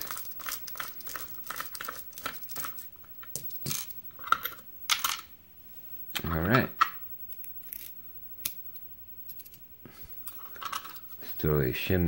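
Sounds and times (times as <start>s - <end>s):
small metal clicks and scraping: 10.2s - 11.2s.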